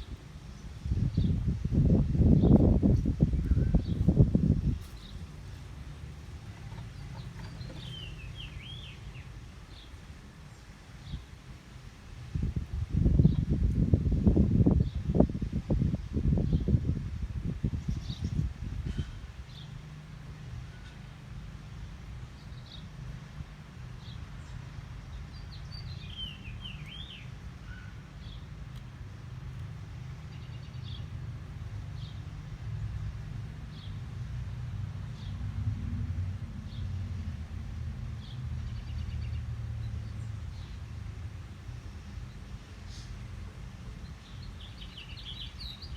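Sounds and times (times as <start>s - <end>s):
steady low rumble: 0.0s - 9.3s
low rumbling noise: 29.0s - 45.9s.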